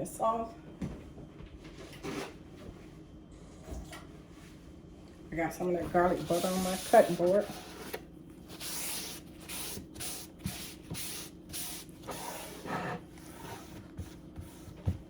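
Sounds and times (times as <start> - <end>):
cloth rubbing cutting board: 5.9 - 7.9.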